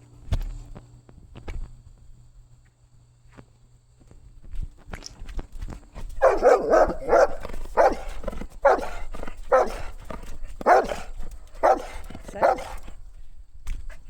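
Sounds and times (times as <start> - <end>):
dog barking: 6.2 - 13.0.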